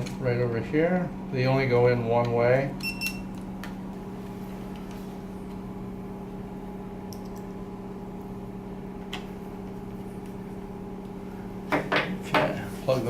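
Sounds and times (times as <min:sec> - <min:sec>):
low background hum: 0:00.0 - 0:13.0.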